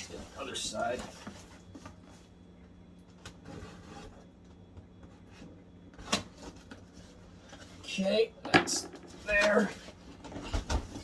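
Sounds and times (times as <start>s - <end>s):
faint steady hum: 0.0s - 11.0s
box scraping and handling: 3.4s - 4.3s.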